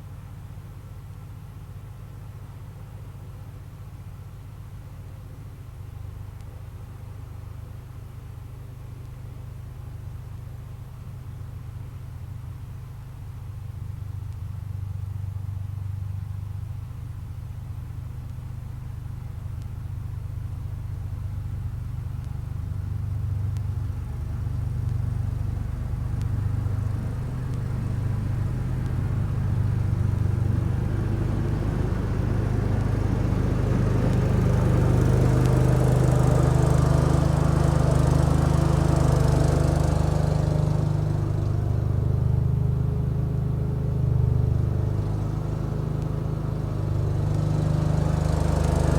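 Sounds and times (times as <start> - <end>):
tractor engine humming: 23.6 - 48.9.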